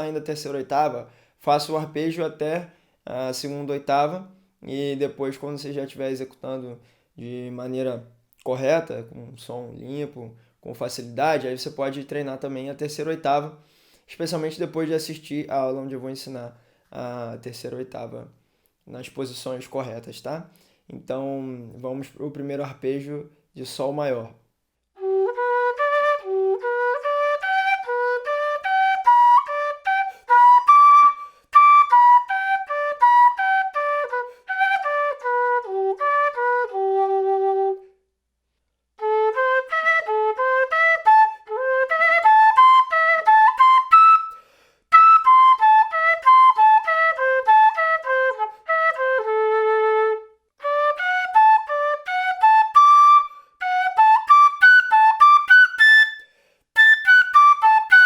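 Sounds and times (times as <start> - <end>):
notched flute arpeggios: 25.0 - 37.8, 39.0 - 44.3, 44.9 - 56.2, 56.8 - 58.0.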